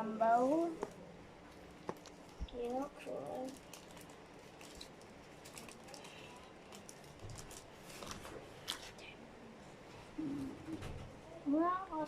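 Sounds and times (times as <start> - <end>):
small objects clicking and rustling: 1.9 - 8.8.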